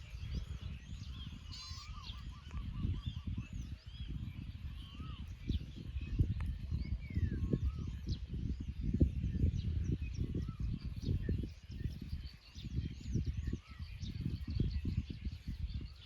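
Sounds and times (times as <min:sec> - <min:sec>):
faint birdcalls chirping: 0:00.0 - 0:09.1
wind buffeting microphone: 0:00.0 - 0:16.0.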